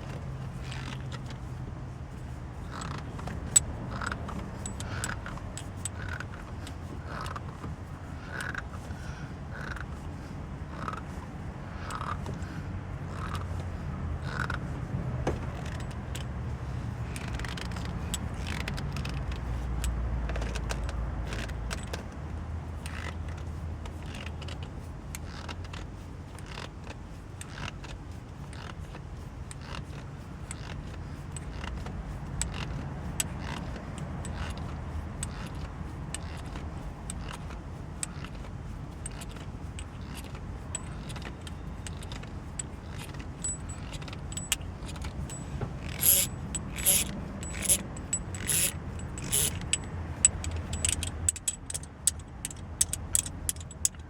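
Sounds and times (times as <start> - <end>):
metallic clicking and rattling: 2.2 - 7.6, 28.4 - 54.0.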